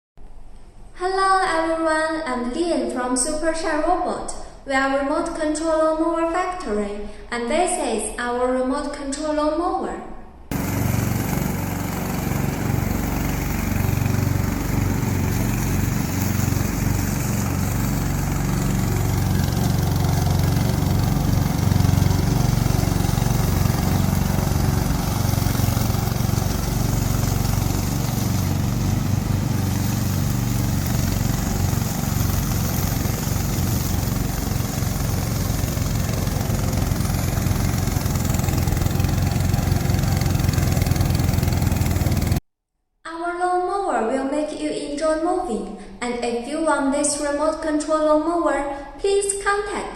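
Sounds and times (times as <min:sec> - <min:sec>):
mower engine running: 0:10.5 - 0:42.4.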